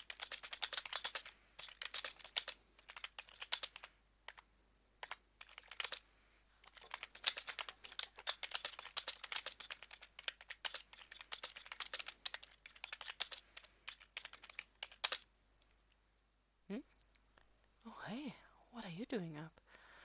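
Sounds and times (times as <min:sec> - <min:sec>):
typing on computer keyboard: 0:00.0 - 0:04.4, 0:05.0 - 0:06.0, 0:06.6 - 0:15.3.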